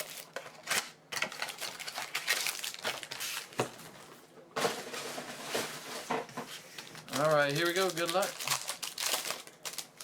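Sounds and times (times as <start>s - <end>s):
wrapper tearing: 0.0s - 3.6s, 6.8s - 10.0s
wrapper crinkling and rustling: 0.0s - 10.0s.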